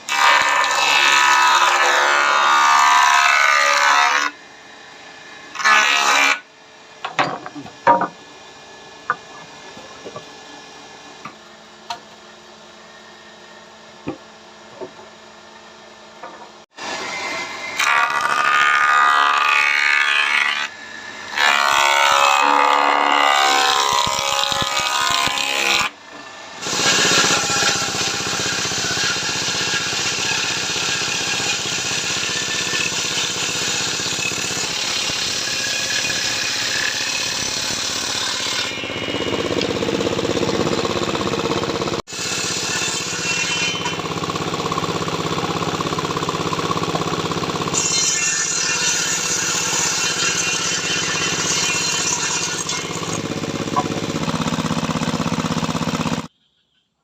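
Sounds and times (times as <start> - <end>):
power tool working wood: 0.0 - 4.4, 16.7 - 56.3.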